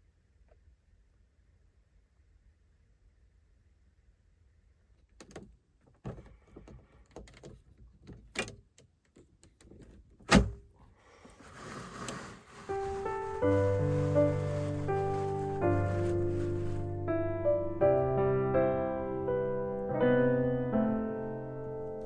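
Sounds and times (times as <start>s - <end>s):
door shutting thunk: 10.3s - 10.6s
rising hiss: 11.7s - 17.0s.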